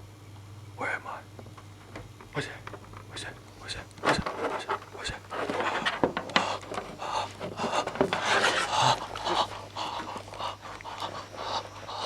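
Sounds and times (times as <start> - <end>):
steady low hum: 0.0 - 12.0
rustling: 4.0 - 12.0
heavy panting breaths: 4.5 - 12.0.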